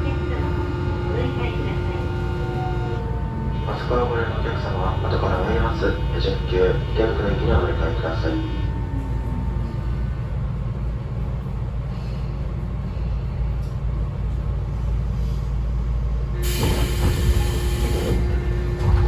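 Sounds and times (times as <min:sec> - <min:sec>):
train low rumble: 0:00.0 - 0:19.0.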